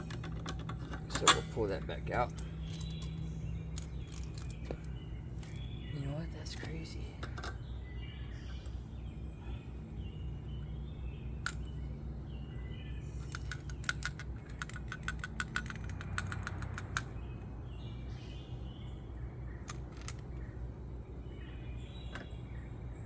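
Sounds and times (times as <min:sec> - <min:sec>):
faint birds chirping: 0:00.0 - 0:23.0.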